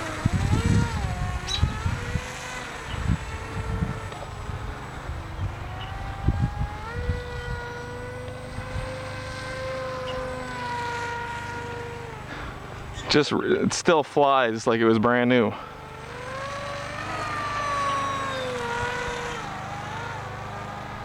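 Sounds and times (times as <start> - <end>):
wind buffeting microphone: 0.0 - 13.8, 15.8 - 20.3
model plane motor whining: 0.0 - 14.2, 15.5 - 21.0.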